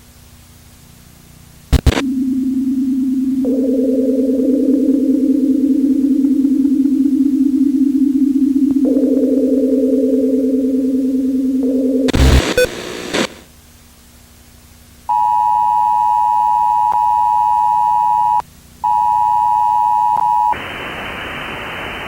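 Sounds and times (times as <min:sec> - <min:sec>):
loud static burst: 0:01.7 - 0:03.3, 0:12.0 - 0:13.5, 0:20.6 - 0:22.0.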